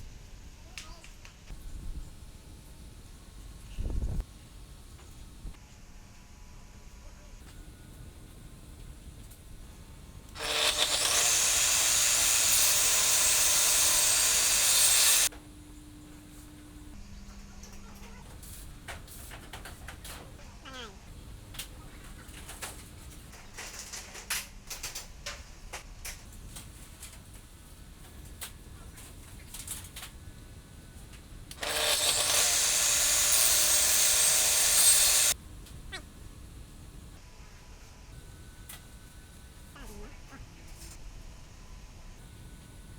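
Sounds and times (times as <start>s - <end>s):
power saw cutting wood: 10.4s - 15.3s, 31.6s - 35.4s.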